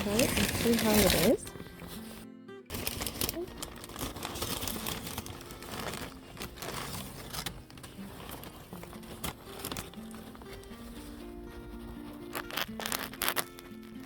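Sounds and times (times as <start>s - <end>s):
paper wrapper crinkling: 0.0s - 14.0s.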